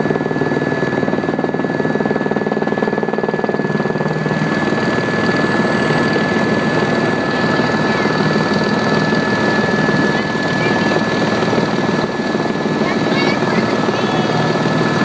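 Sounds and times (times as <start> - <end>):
helicopter engine and rotor: 0.0 - 15.0.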